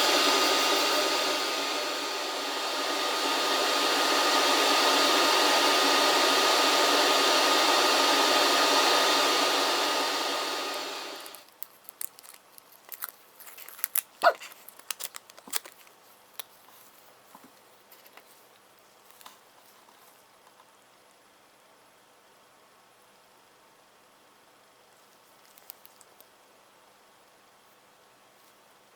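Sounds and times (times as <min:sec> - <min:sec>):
hot air blower with whine: 0:00.0 - 0:11.4.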